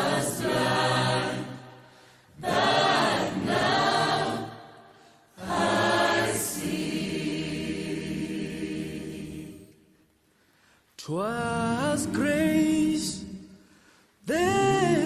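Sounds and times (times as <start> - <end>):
choir singing: 0.0 - 9.9.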